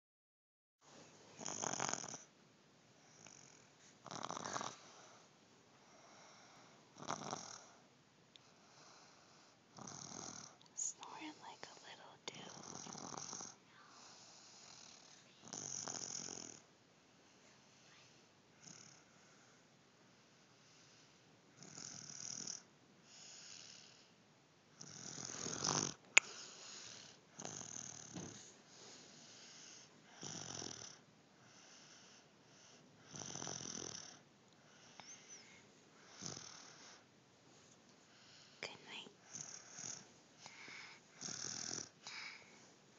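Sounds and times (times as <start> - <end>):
baby snoring softly: 1.3 - 2.3, 3.0 - 5.2, 5.8 - 7.8, 8.5 - 16.6, 17.6 - 19.5, 20.2 - 24.1, 24.8 - 37.1, 38.1 - 42.6
faint breathing: 13.5 - 15.5, 25.2 - 27.3, 28.2 - 30.3, 34.6 - 42.8.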